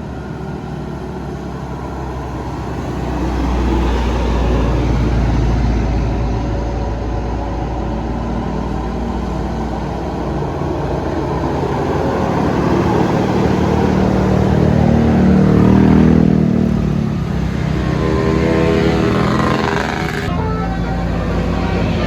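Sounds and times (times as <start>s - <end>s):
bus engine passing: 0.0s - 22.0s
road and traffic noise: 0.0s - 22.0s
steady pitched tones: 17.6s - 22.0s.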